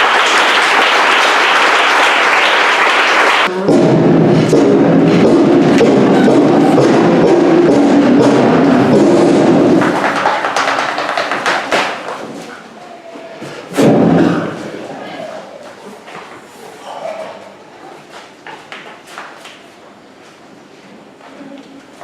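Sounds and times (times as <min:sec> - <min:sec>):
thumps and knocks: 0:03.7 - 0:12.4.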